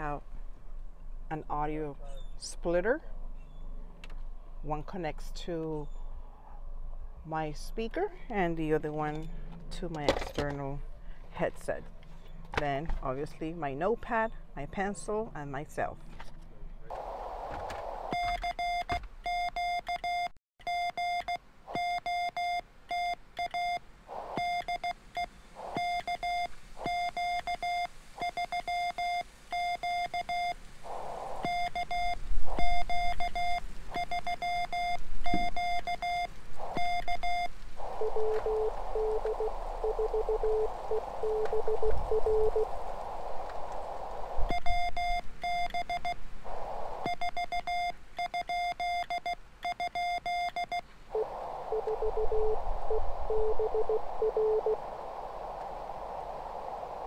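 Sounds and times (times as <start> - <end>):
radio band hiss: 16.9 - 18.2, 24.1 - 24.6, 25.5 - 29.5, 30.3 - 47.4, 51.1 - 57.0
faint lower-pitched morse signal: 16.9 - 57.0
morse code sidetone beeps: 18.1 - 23.8, 24.4 - 42.7, 44.4 - 54.9.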